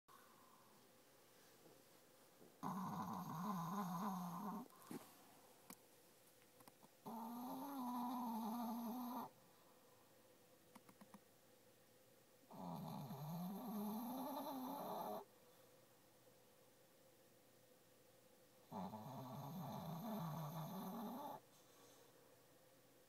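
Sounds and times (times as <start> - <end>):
dog snoring: 2.6 - 4.7, 7.0 - 9.4, 12.5 - 15.3, 18.7 - 22.0.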